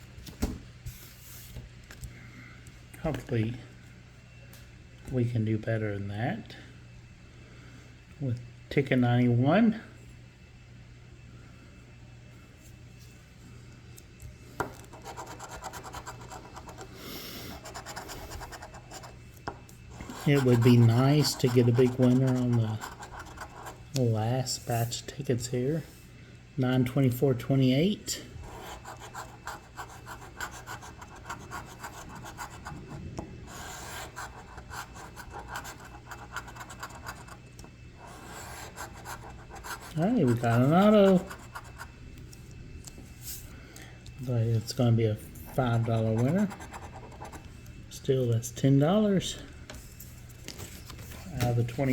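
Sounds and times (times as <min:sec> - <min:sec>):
scratching lottery ticket: 0:14.8 - 0:19.2, 0:19.9 - 0:23.9, 0:28.4 - 0:37.4, 0:38.0 - 0:41.9, 0:45.5 - 0:47.5.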